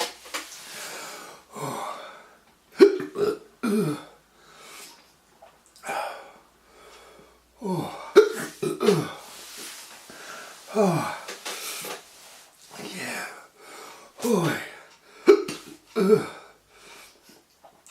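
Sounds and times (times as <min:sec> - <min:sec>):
man's strained vocal sounds: 0:07.6 - 0:09.2, 0:10.7 - 0:11.4, 0:14.2 - 0:16.6.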